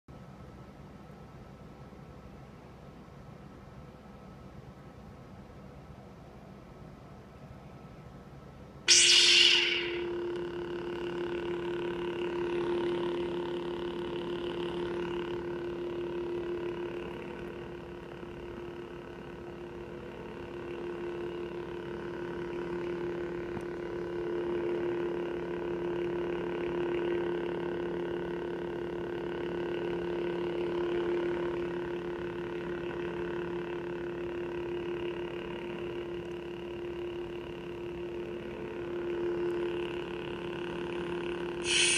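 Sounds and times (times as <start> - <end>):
lightsaber hum: 8.9 - 25.9, 37.7 - 41.9.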